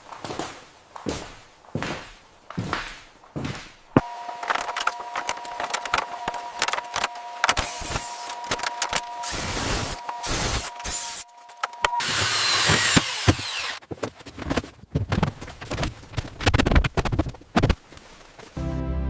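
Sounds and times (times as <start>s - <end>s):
power tool whining: 4.0s - 13.8s
hiss: 9.2s - 11.2s.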